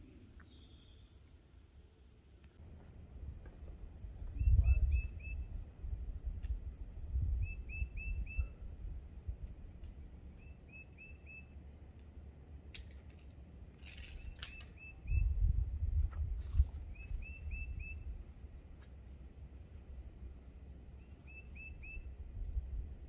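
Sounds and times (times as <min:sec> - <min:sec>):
songbird whistling notes: 0:04.3 - 0:05.6, 0:07.4 - 0:08.6, 0:10.4 - 0:11.6, 0:13.9 - 0:15.6, 0:16.8 - 0:18.1, 0:21.0 - 0:22.2.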